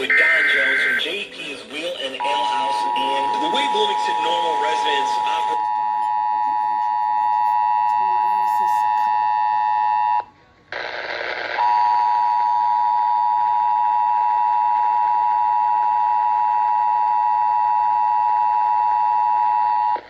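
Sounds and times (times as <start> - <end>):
two-tone alert signal: 0.0 - 1.2.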